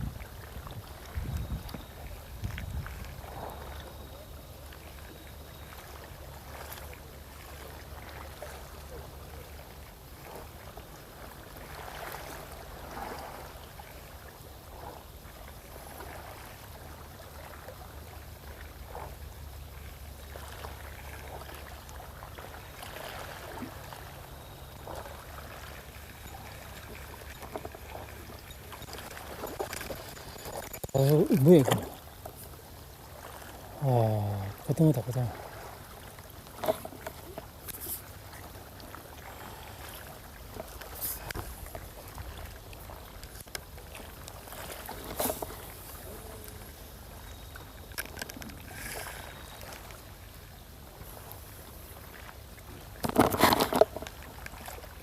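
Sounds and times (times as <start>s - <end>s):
wind rumble on microphone: 0.0s - 4.1s
faint sea water lapping: 0.0s - 55.0s.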